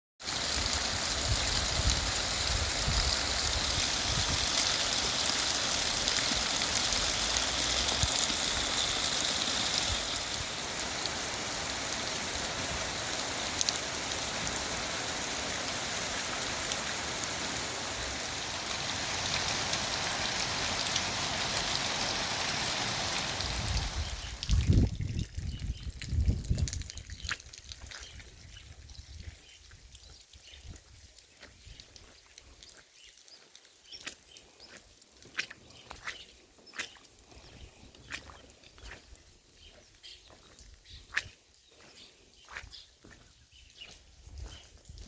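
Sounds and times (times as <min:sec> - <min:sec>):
heavy rain: 0:00.2 - 0:24.8.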